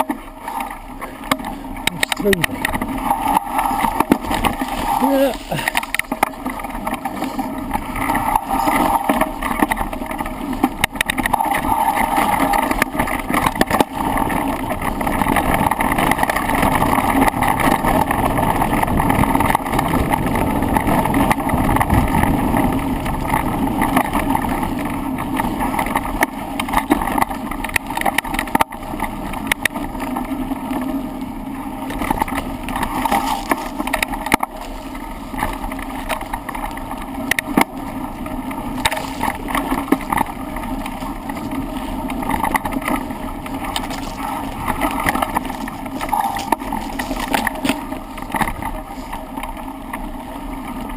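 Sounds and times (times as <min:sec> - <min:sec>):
handlebar rattles and knocks: 0:00.0 - 0:50.2
bicycle tyre rumble on trail: 0:00.0 - 0:50.9
wind on microphone: 0:17.7 - 0:24.4.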